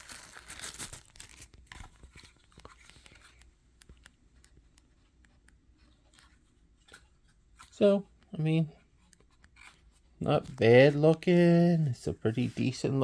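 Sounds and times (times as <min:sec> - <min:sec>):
packaging rustling and crinkling: 0:00.0 - 0:05.1
light clicks and taps: 0:01.6 - 0:08.3.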